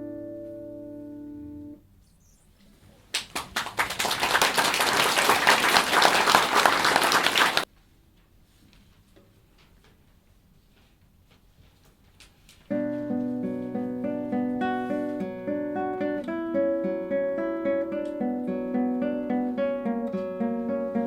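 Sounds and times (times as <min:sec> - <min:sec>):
audience applauding: 0:03.1 - 0:07.7
classical guitar chord ringing: 0:12.7 - 0:21.0.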